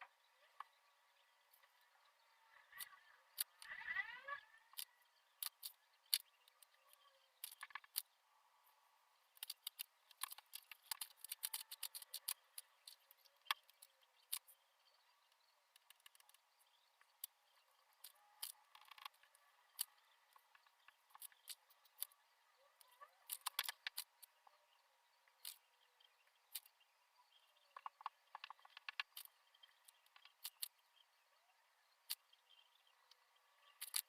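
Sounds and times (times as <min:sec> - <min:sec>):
small clicks and taps on desk: 0:04.8 - 0:08.1, 0:09.4 - 0:14.5, 0:15.8 - 0:16.4, 0:22.8 - 0:24.3, 0:27.7 - 0:30.8.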